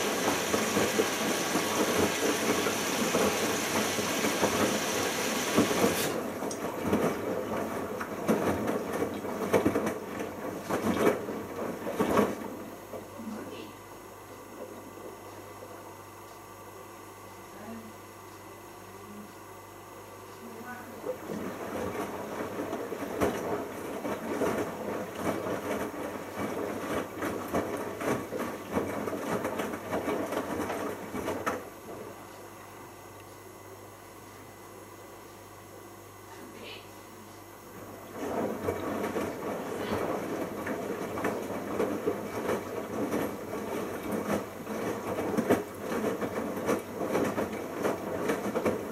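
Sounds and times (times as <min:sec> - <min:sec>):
washing machine drum sloshing water: 0:00.0 - 0:13.1, 0:21.0 - 0:32.2, 0:37.7 - 0:48.9.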